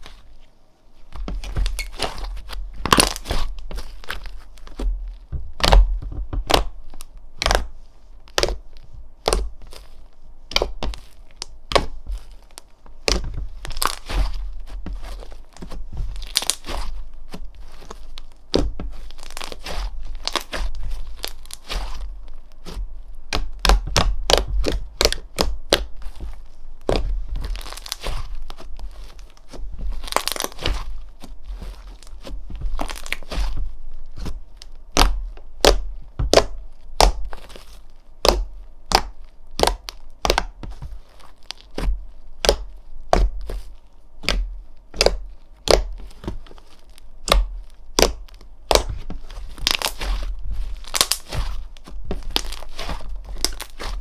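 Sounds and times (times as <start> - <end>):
crackling rustles: 10.9 - 23.3, 24.8 - 36.1, 44.6 - 54.0.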